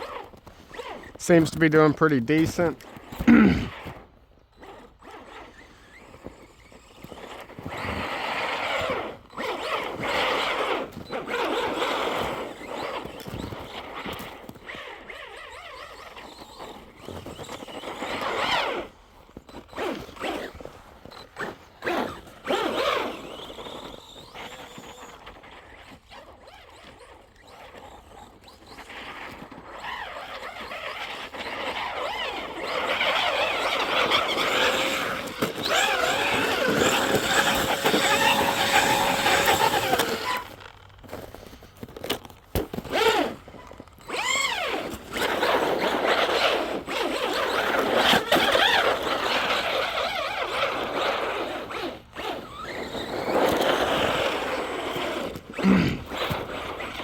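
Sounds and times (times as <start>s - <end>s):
tyres churning snow: 0.0s - 57.0s
electric motor whine: 28.3s - 41.2s, 42.9s - 57.0s.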